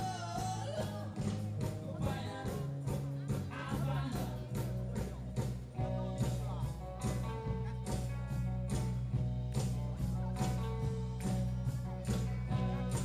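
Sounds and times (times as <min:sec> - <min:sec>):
person singing: 0:00.0 - 0:08.1
live rock band playing: 0:00.0 - 0:13.0
steady drum beat: 0:00.0 - 0:13.0.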